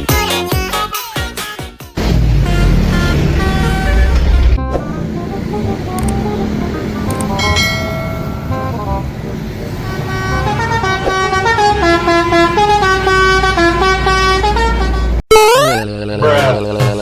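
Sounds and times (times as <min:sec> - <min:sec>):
low engine rumble: 0:02.0 - 0:15.2
truck horn melody: 0:02.0 - 0:15.2.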